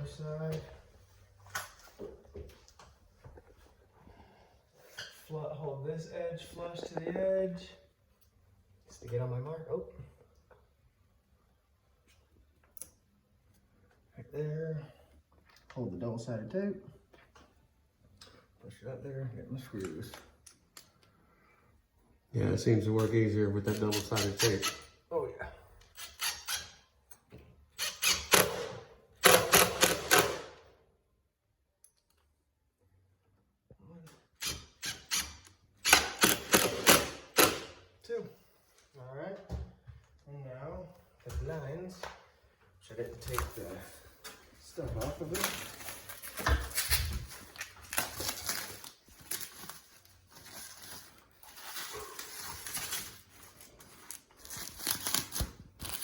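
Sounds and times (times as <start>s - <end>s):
power drill driving screws: 27.8s - 28.6s, 34.4s - 37.6s
packing material rustling: 45.0s - 56.0s.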